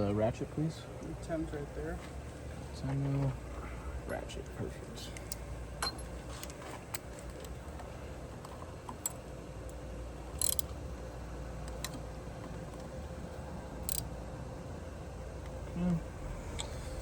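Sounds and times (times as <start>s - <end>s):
low steady hum: 0.0s - 17.0s
socket ratchet clicking: 10.4s - 10.7s, 13.8s - 14.1s.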